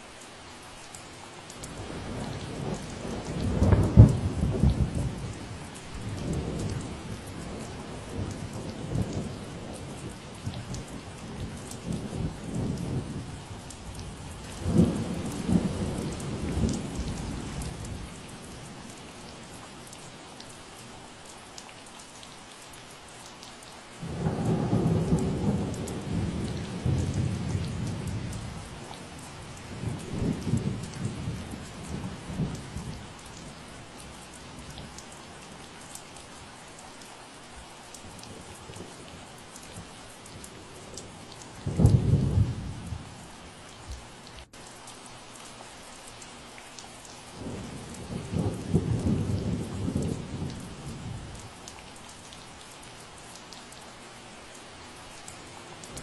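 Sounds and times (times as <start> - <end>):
steady rain hissing: 0.0 - 56.0
thunder rumbling: 13.9 - 18.2, 24.0 - 33.1, 39.7 - 43.2, 47.4 - 51.6.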